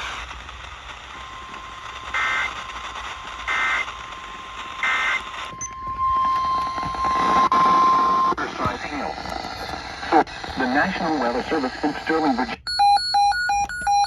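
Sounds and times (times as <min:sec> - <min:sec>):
steady warning alarm tone: 0:01.0 - 0:04.0, 0:04.8 - 0:14.0
screeching two-tone data bursts: 0:04.8 - 0:12.5.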